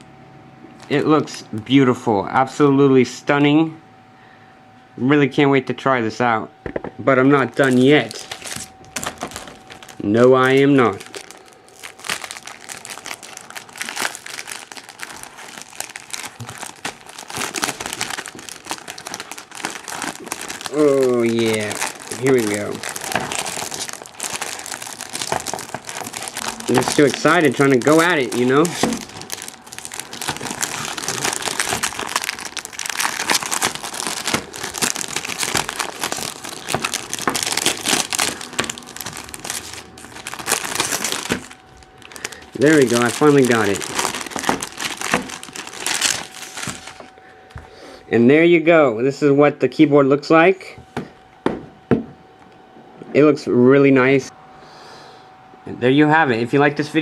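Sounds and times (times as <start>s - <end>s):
packaging crinkling: 7.4s - 47.2s.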